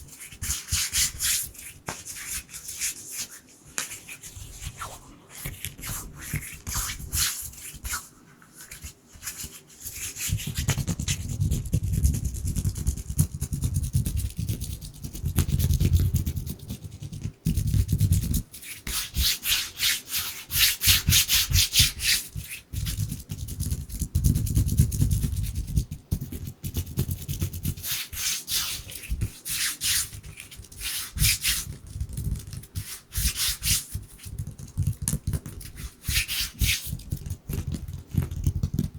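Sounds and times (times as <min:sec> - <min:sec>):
palms rubbing together: 0:26.9 - 0:37.7.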